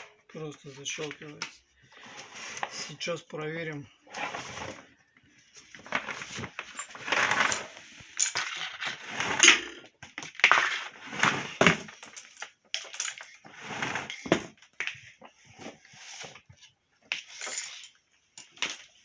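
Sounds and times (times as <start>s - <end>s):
plastic vacuum parts clattering: 5.6s - 19.0s.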